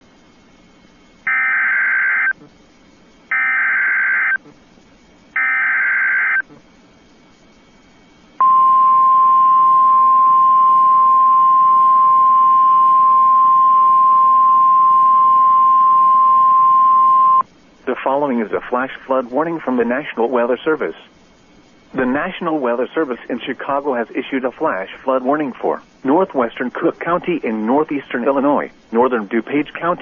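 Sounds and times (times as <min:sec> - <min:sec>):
buzzing digital data bursts: 0:03.3 - 0:04.4, 0:05.3 - 0:06.4.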